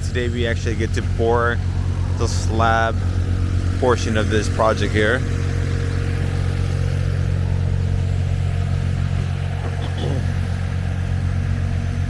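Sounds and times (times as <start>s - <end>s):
diesel engines droning: 0.0s - 12.0s
faint voice: 9.6s - 10.6s.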